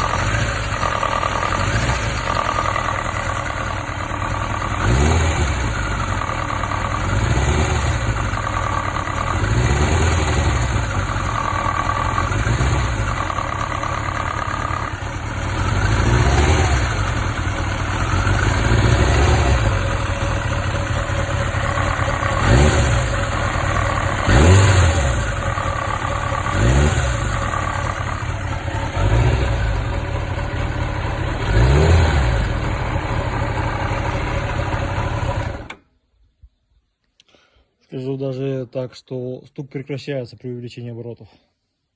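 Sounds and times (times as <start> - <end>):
engine knock: 0.0 - 35.8
motorcycle engine revving: 0.0 - 35.8
man talking: 37.8 - 41.4.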